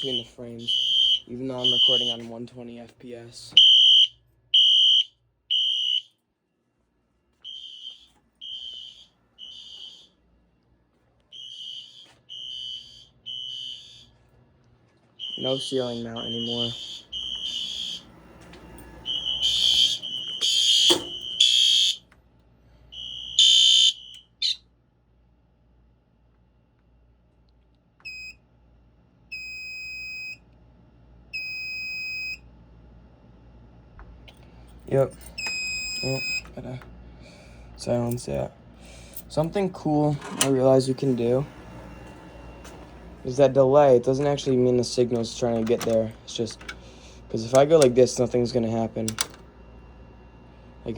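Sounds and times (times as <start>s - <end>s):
fire alarm beeping: 0.0s - 2.4s, 3.5s - 6.2s, 7.4s - 10.2s, 11.3s - 14.2s, 15.2s - 22.1s, 22.9s - 24.6s, 28.0s - 28.4s, 29.3s - 30.4s, 31.3s - 32.4s, 34.9s - 36.6s, 39.2s - 49.4s.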